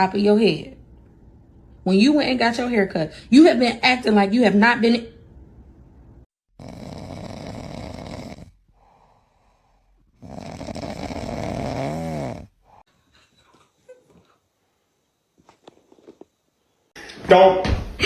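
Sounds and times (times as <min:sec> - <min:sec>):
dog snoring: 0:06.6 - 0:12.8.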